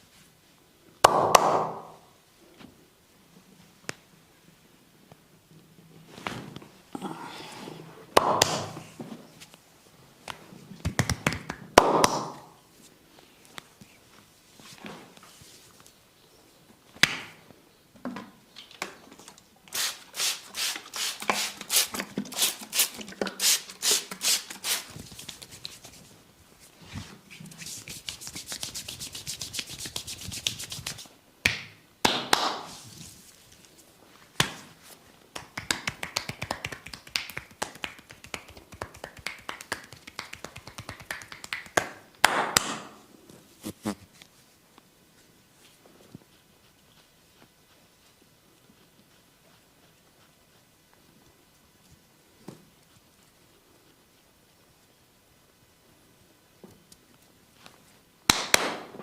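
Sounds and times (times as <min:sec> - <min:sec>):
hand claps: 0:01.0 - 0:02.0, 0:08.2 - 0:08.8, 0:10.8 - 0:12.5, 0:29.6 - 0:32.8, 0:35.4 - 0:42.9, 0:58.3 - 0:58.9
hands slapping and tapping: 0:01.0 - 0:02.0, 0:08.2 - 0:08.8, 0:10.3 - 0:12.5, 0:17.0 - 0:17.4, 0:27.6 - 0:32.8, 0:34.4 - 0:43.0, 0:58.3 - 0:59.0.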